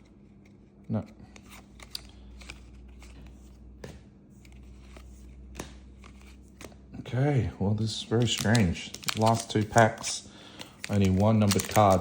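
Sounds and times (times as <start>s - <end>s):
trading cards clicking and rustling: 0.0s - 6.9s, 7.8s - 12.0s.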